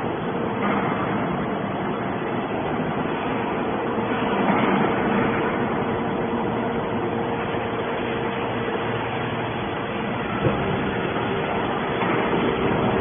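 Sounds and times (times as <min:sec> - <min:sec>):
hydraulic pump motor hum: 0:00.0 - 0:13.0.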